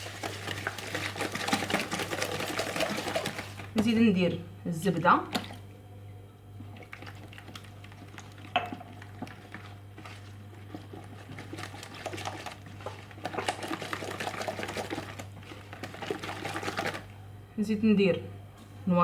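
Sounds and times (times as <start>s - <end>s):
whisk scraping a bowl: 0.0s - 3.7s, 6.9s - 17.1s
steady low hum: 0.0s - 19.0s.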